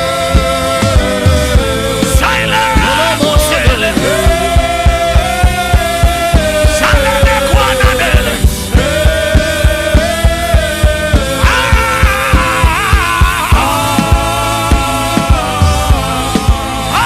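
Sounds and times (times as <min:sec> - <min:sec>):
held keyboard chords: 0:00.0 - 0:17.0
lead melody line: 0:00.1 - 0:17.0
quick drum beat: 0:00.4 - 0:17.0.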